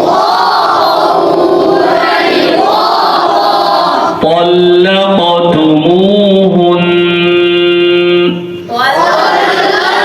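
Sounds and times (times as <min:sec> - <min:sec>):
group chanting in unison: 0:00.0 - 0:04.3, 0:08.7 - 0:10.0.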